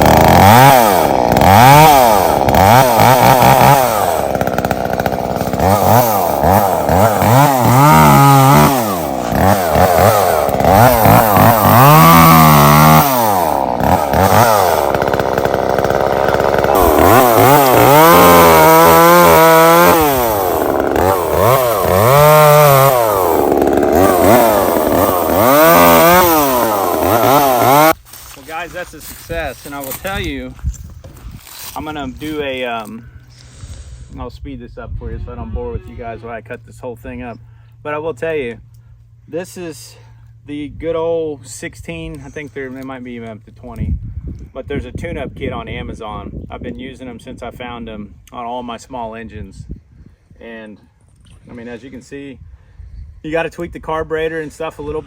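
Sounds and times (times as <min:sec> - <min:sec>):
chainsaw revving: 0:00.0 - 0:30.4
chainsaw cutting wood: 0:00.0 - 0:34.1.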